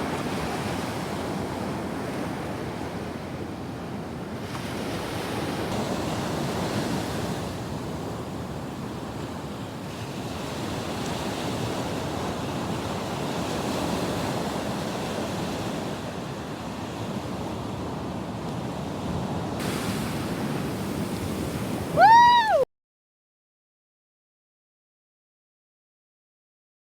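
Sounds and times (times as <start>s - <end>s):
surf breaking on shore: 19.5s - 22.6s.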